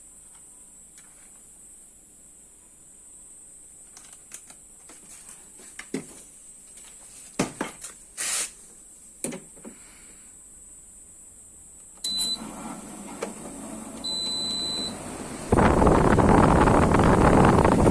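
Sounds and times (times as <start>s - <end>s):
clicks and knocks of handling equipment: 3.9s - 8.0s
short hiss: 8.2s - 8.6s.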